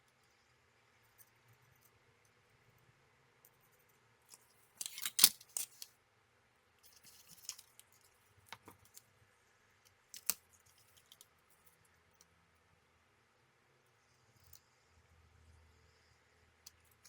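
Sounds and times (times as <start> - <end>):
small tools clicking: 4.3 - 5.9, 10.2 - 11.2.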